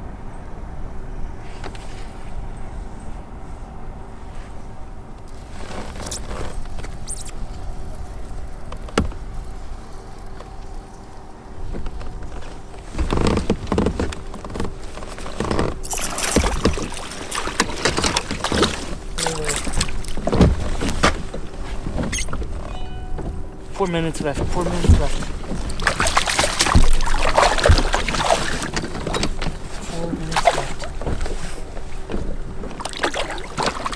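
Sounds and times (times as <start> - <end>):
water splashing: 15.8 - 20.9, 22.2 - 32.0, 32.6 - 33.9.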